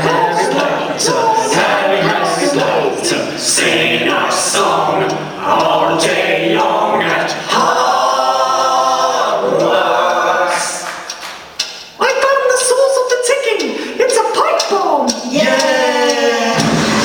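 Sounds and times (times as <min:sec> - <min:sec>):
a cappella group singing: 0:00.0 - 0:11.2, 0:15.1 - 0:17.0.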